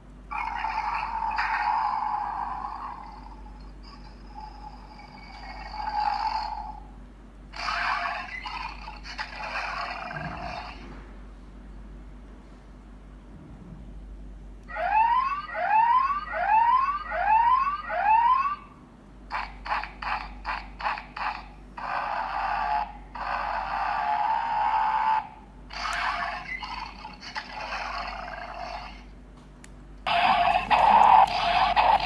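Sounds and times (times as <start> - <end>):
toy animal calls through speaker: 30.1 - 32.0.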